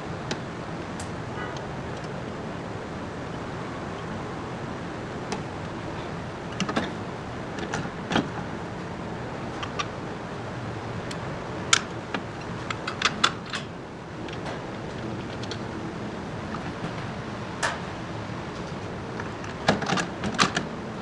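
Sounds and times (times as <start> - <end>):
steady background hiss: 0.0 - 21.0
sharp clicks and knocks: 6.5 - 7.0, 7.6 - 8.4, 11.0 - 15.7, 16.5 - 17.9, 18.5 - 20.7.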